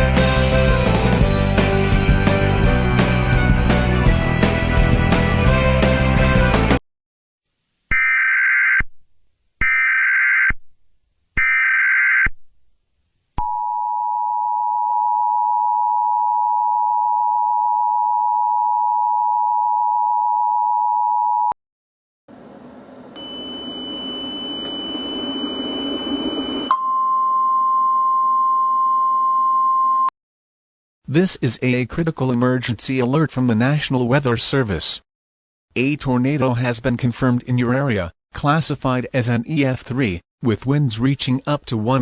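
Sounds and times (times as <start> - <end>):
two-tone attention signal: 23.2 - 28.3.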